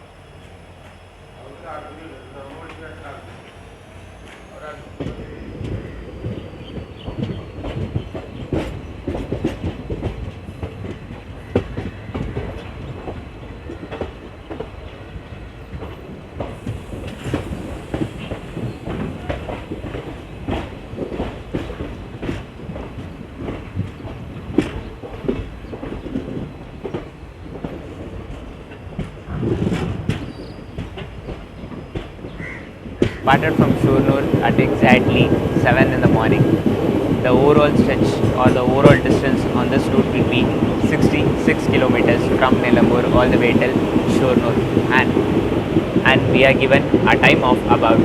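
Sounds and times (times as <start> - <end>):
train rumble: 0.0 - 48.0
train wheels clacking over joints: 1.7 - 48.0.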